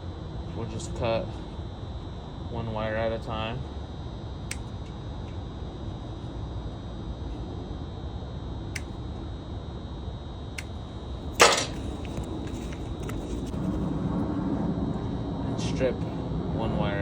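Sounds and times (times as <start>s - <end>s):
low background hum: 0.0s - 17.0s
wire cutters snapping wire: 11.4s - 12.3s.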